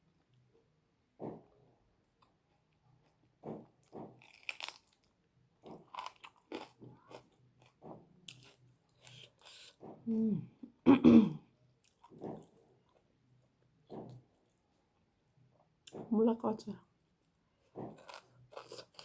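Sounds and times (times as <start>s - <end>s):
person chewing food: 2.2s - 10.1s, 11.8s - 13.1s, 13.8s - 14.6s, 17.6s - 19.0s
crisp crunches: 4.2s - 5.1s, 17.9s - 19.0s.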